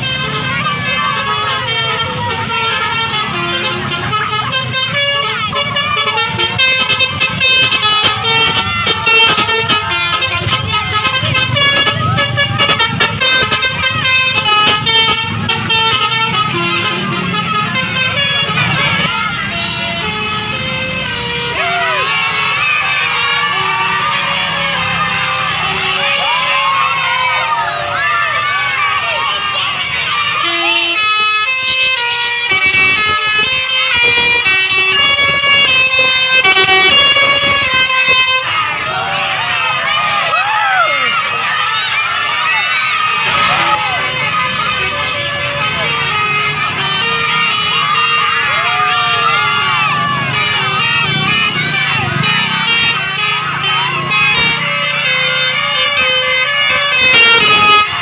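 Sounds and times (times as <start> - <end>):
bus engine running: 0.0 - 58.0
musical bus air horn: 0.0 - 58.0
musical air horn tune: 43.2 - 58.0.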